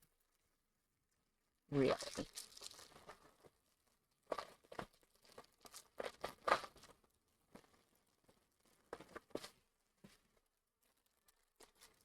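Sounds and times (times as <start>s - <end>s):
plastic packaging crinkling: 1.9s - 3.3s.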